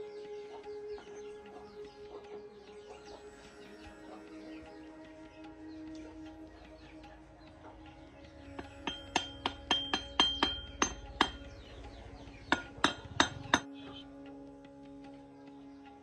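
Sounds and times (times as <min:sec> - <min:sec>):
background music: 0:00.0 - 0:16.0
sharp metallic clinks: 0:07.7 - 0:13.8.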